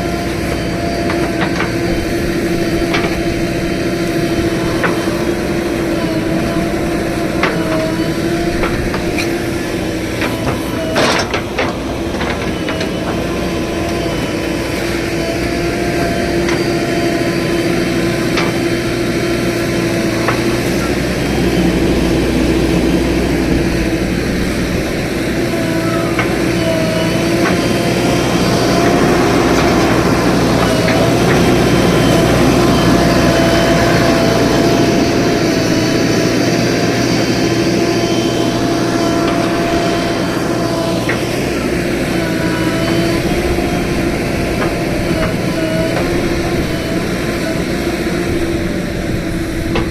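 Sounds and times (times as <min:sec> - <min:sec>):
diesel engine running under load: 0:00.0 - 0:49.9.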